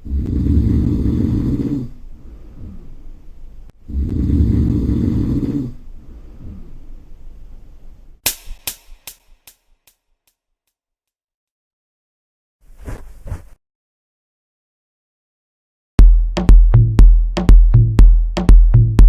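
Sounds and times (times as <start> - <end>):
person snoring: 0.0 - 3.0, 3.8 - 6.8
soft breaths: 0.0 - 8.2
sharp echoing crack: 8.3 - 9.9.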